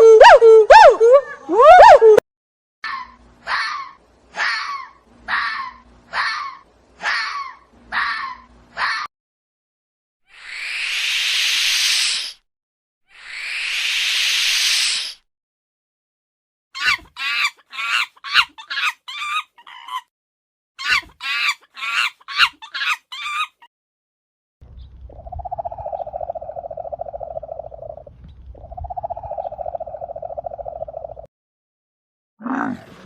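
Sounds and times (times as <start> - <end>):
animal hiss: 10.4 - 12.4, 13.2 - 15.2
low rumble: 24.6 - 31.2.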